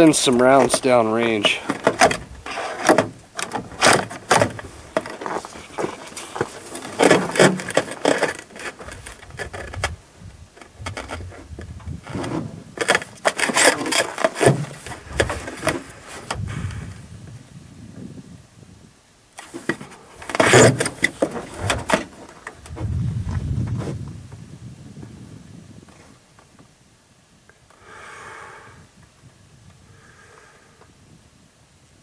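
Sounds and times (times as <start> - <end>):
rifle handling clicks and scraping: 0.1 - 10.0, 10.6 - 16.4.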